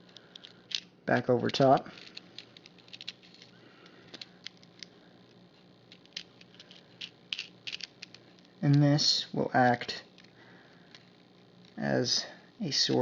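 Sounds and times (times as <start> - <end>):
small hardware parts clicking: 0.0 - 4.9, 5.9 - 8.8
low steady hum: 0.0 - 13.0.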